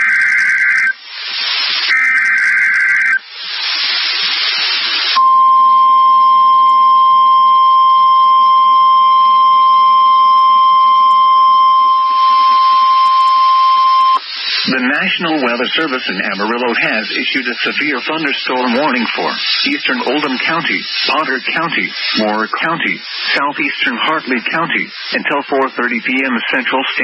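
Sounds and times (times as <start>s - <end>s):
screechy digital data bursts: 0.0s - 3.2s, 11.8s - 26.9s
radio static: 0.0s - 5.4s, 10.6s - 27.0s
single-pitch alarm tone: 1.9s - 3.2s, 5.2s - 14.2s.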